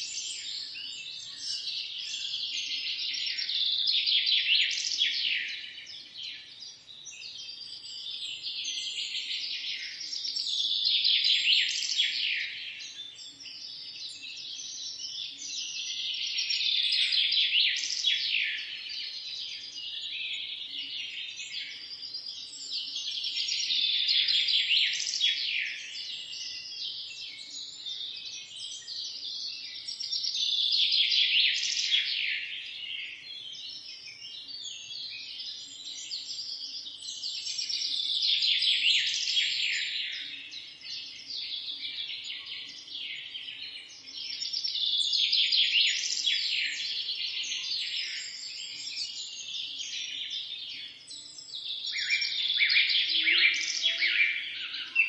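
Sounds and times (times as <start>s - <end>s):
small birds chirping in chorus: 0.0s - 55.0s.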